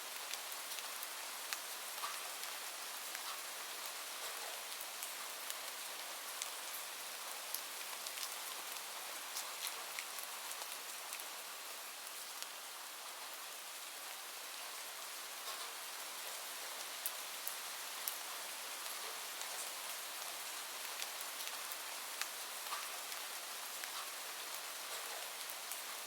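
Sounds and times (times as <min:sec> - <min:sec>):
rain falling: 0:00.0 - 0:26.0
raindrops ticking on a surface: 0:00.1 - 0:26.0.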